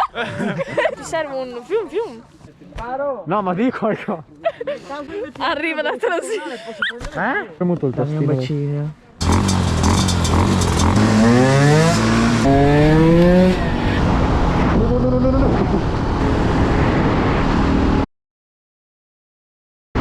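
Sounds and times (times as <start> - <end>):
motorcycle engine accelerating: 9.2 - 18.0.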